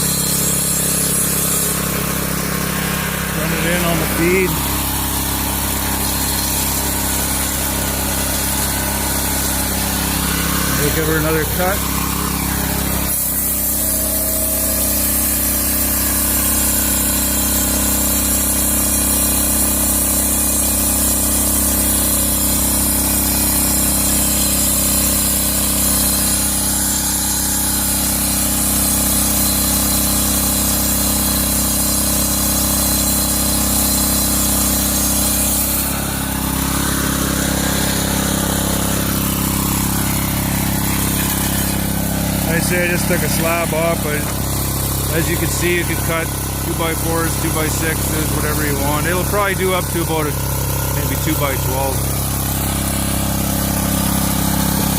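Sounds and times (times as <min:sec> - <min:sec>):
rising saw whine: 0:00.0 - 0:18.1
portable sawmill engine running: 0:00.0 - 0:54.9.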